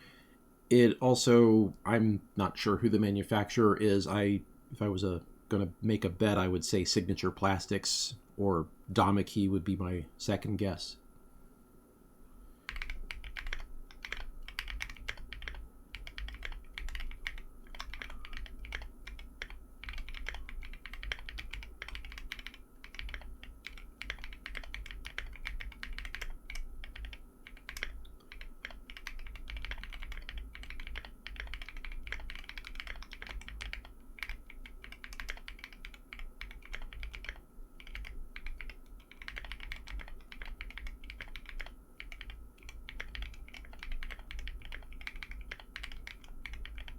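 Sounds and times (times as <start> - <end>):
typing on mechanical keyboard: 12.7 - 46.9.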